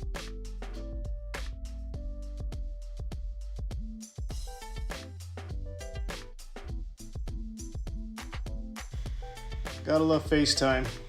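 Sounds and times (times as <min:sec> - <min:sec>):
drums: 0:00.0 - 0:11.0.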